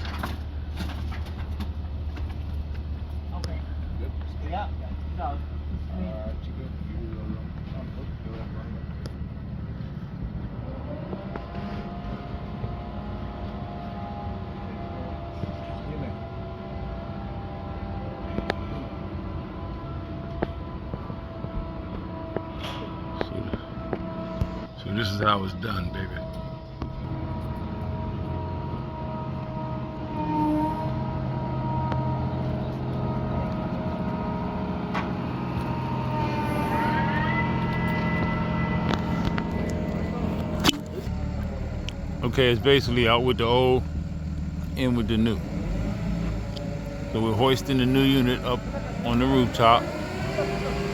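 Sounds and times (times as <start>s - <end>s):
crane engine running: 0.0s - 50.9s
rising whine: 10.2s - 50.9s.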